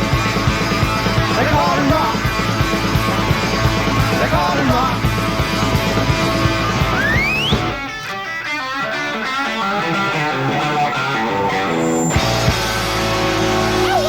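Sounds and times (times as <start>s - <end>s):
drum hits: 0.0s - 8.2s
electric guitar solo run: 0.0s - 14.0s
live rock band: 0.0s - 14.0s.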